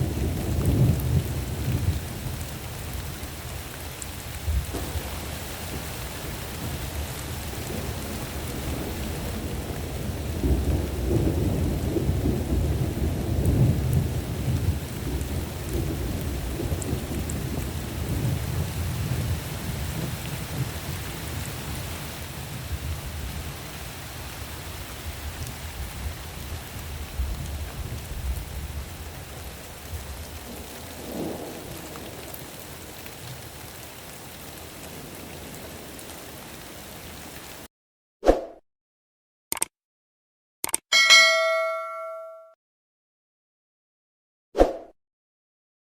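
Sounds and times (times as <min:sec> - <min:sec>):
thunder rumbling: 0:00.0 - 0:21.7, 0:27.0 - 0:33.8
steady rain: 0:00.0 - 0:37.7
short ringing ding: 0:40.9 - 0:42.6.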